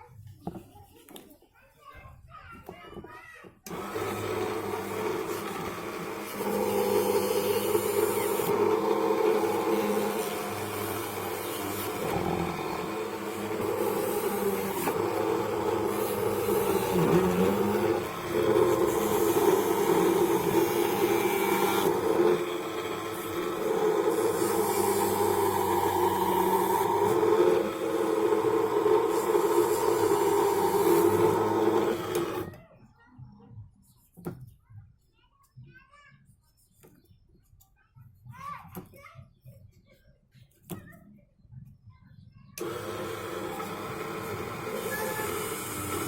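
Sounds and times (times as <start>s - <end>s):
small machine running: 3.6s - 32.6s, 42.6s - 46.0s.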